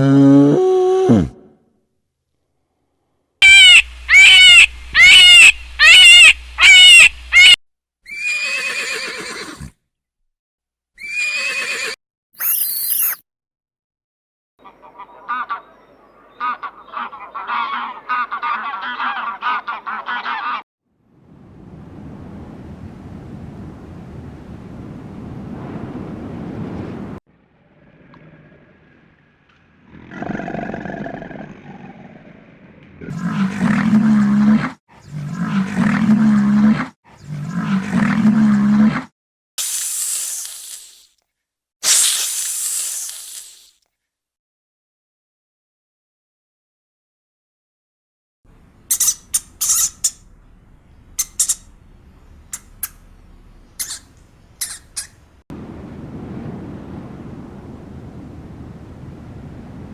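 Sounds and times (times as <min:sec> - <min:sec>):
farm animal calling: 0:03.4 - 0:09.6, 0:14.6 - 0:20.6, 0:48.8 - 0:55.3
farm animal crying: 0:03.4 - 0:09.7, 0:11.0 - 0:12.0, 0:48.9 - 0:50.3, 0:51.1 - 0:51.8, 0:53.8 - 0:55.2.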